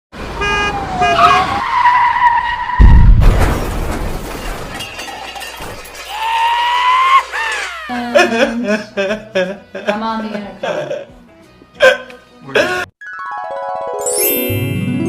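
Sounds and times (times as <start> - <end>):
loud crash: 2.8 - 6.1.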